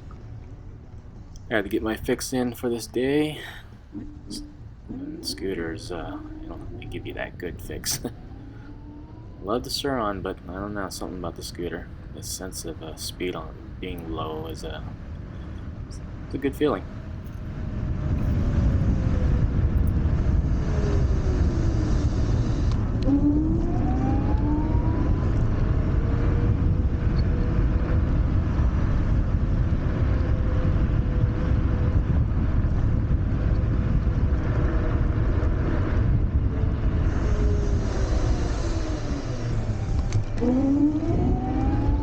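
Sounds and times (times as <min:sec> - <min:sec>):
road rumble: 0:00.0 - 0:42.0
wind buffeting microphone: 0:00.0 - 0:42.0
electric scooter motor whine: 0:03.7 - 0:07.5, 0:08.1 - 0:09.5, 0:14.9 - 0:42.0.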